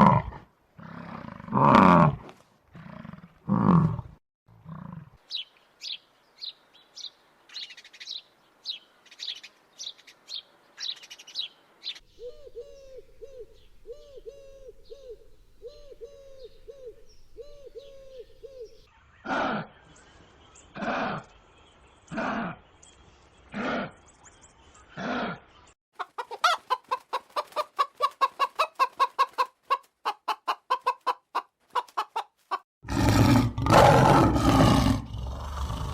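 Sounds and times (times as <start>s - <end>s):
deep animal roars: 0.0s - 5.2s, 32.8s - 35.9s
bird chirping high: 5.3s - 19.2s.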